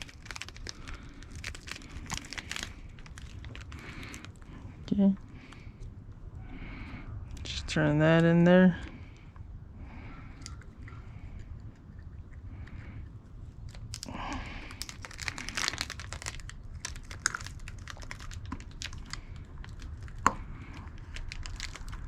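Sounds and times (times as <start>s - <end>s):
plastic parts rustling and crinkling: 0.0s - 5.7s, 13.7s - 22.0s.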